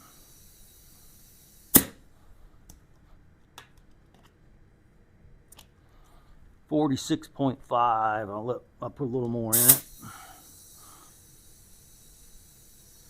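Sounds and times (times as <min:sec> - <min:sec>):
compressed air hissing into tire: 0:00.0 - 0:02.0, 0:09.5 - 0:13.0
loud sharp snap: 0:01.7 - 0:02.0, 0:09.6 - 0:09.9.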